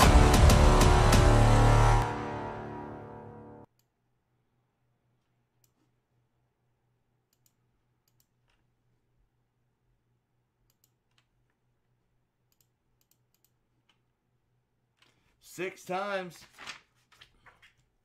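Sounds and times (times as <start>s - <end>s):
low hum: 0.0s - 3.7s.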